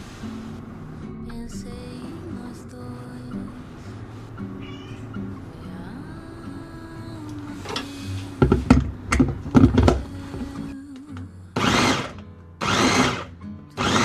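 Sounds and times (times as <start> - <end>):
short noisy bursts: 0.0 - 10.8, 11.6 - 14.0
soft background music: 0.0 - 14.0
kitchen knocks: 7.6 - 10.7.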